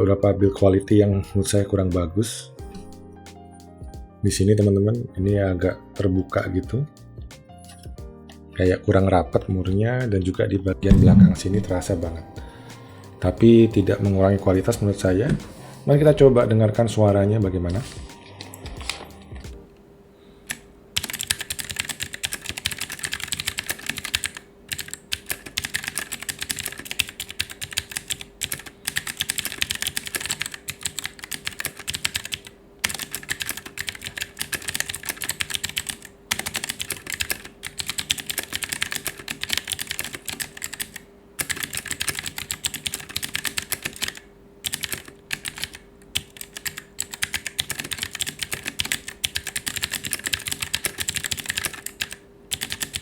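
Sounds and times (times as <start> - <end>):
mechanical keyboard typing: 10.8 - 12.2, 20.5 - 53.0.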